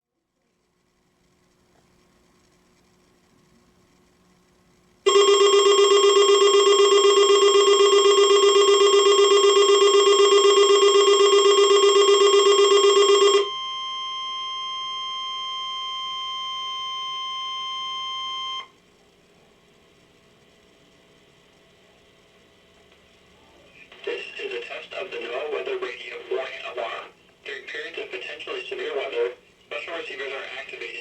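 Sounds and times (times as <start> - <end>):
loud rapidly pulsing alarm tone: 5.1 - 15.9
steady warning alarm tone: 5.1 - 18.7.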